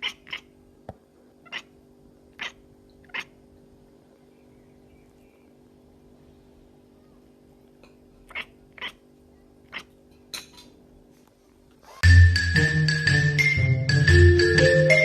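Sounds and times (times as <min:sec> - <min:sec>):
cat crying: 0:00.0 - 0:00.6, 0:01.4 - 0:03.4, 0:08.3 - 0:09.1
faint steady hum: 0:00.0 - 0:12.0
marimba-like music: 0:12.0 - 0:15.0.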